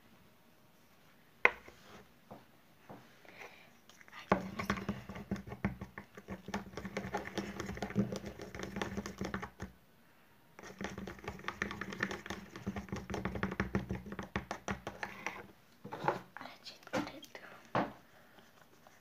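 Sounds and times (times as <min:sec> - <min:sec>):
teaspoon stirring sticky slime: 0:04.2 - 0:09.7, 0:10.6 - 0:15.5.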